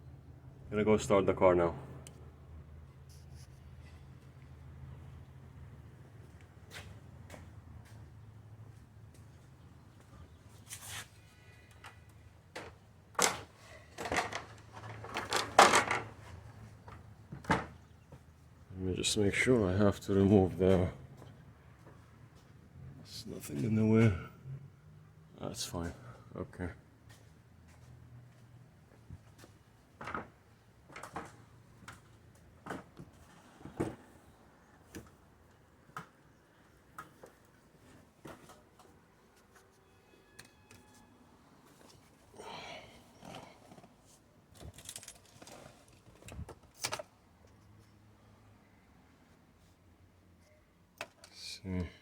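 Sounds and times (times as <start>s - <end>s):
handling knocks and clunks: 12.5s - 16.3s.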